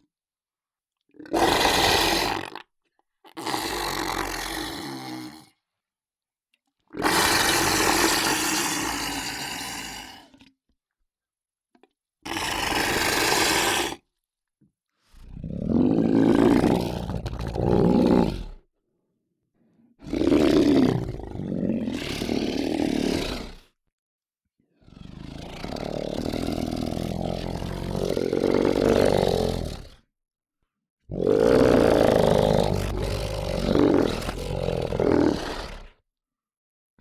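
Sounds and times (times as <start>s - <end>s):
large creature roaring: 15.4s - 18.6s, 20.0s - 23.7s, 24.9s - 30.0s, 31.1s - 35.9s.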